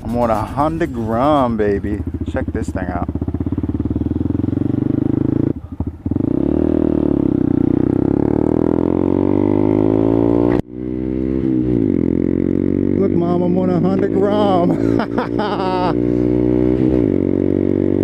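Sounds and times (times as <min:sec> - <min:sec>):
motorcycle engine accelerating: 0:00.0 - 0:18.0.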